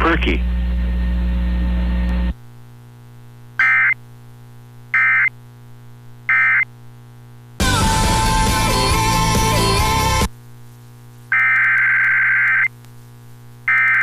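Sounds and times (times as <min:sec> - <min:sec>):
faint hum: 0:00.0 - 0:14.0
buzzy digital data bursts: 0:03.6 - 0:04.0
loud music: 0:07.6 - 0:10.3.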